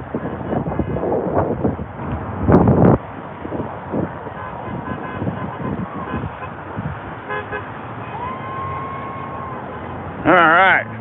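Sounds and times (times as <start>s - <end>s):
loud rush of noise: 0.0s - 11.0s
traffic noise: 0.0s - 11.0s
vehicle horns honking: 0.1s - 1.2s, 4.3s - 8.2s.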